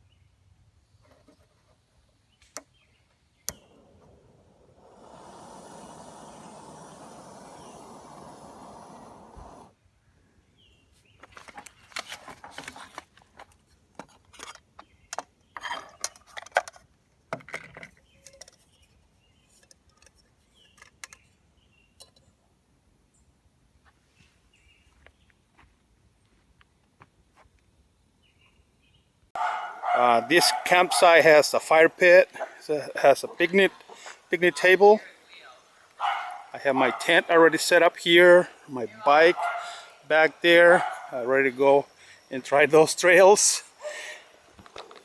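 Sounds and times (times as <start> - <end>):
steady noise: 3.5 - 9.7, 29.4 - 45.0.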